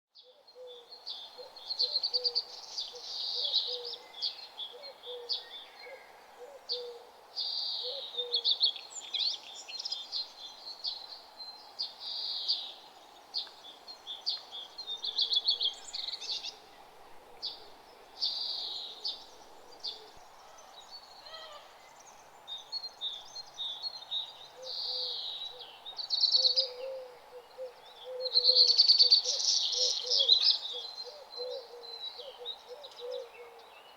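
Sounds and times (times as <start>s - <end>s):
faint background noise: 0.1s - 33.9s
songbirds chirping and singing: 18.2s - 33.9s.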